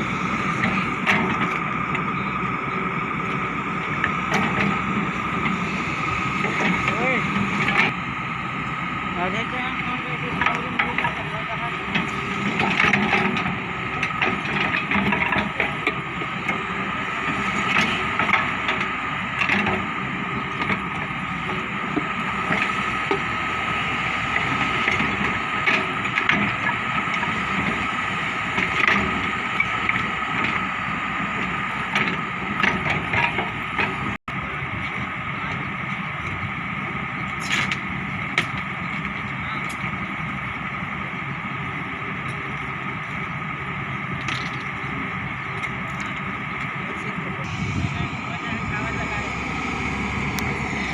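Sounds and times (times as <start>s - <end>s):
excavator diesel engine: 0.0s - 50.9s
knocks and clanks: 11.9s - 16.6s
steady high tone: 47.2s - 50.9s.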